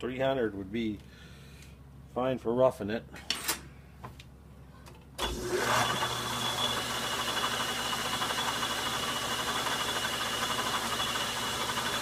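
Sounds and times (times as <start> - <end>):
metal lathe motor whining: 5.2 - 12.0.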